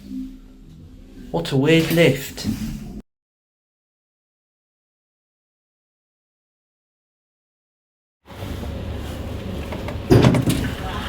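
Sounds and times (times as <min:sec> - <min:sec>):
low rumbling background noise: 0:08.3 - 0:11.0.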